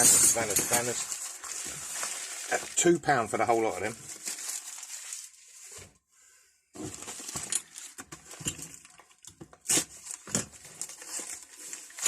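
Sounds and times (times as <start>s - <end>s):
metal spanners clinking: 0.0s - 1.0s.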